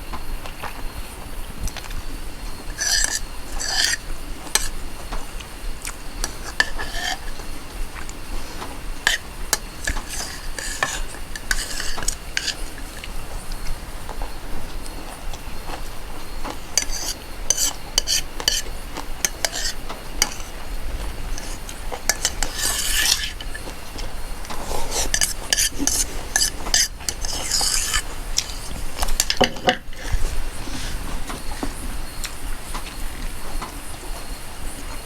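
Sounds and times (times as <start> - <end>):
spoon clinking against a dish: 2.7 - 4.8, 5.8 - 13.1, 16.7 - 20.6, 21.3 - 30.3.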